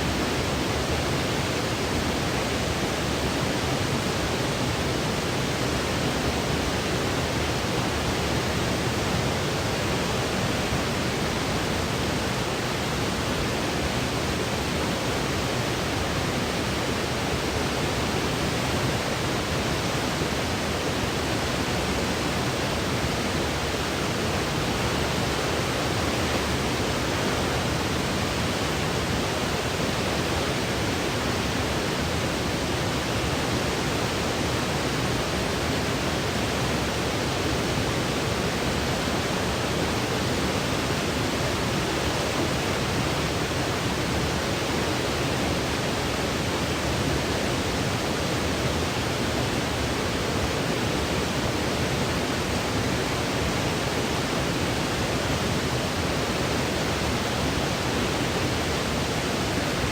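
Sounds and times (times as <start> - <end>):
steady white noise hiss: 0.0 - 59.9.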